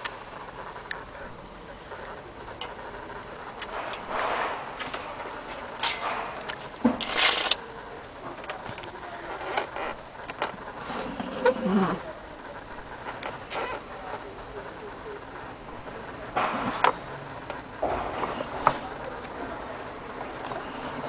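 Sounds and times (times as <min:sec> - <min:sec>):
scraping noise: 0:10.8 - 0:12.1.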